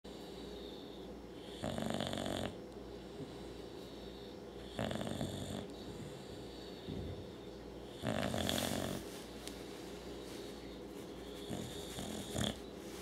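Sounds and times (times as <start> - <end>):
dog snoring: 1.4 - 2.6, 4.6 - 9.1, 11.3 - 12.7.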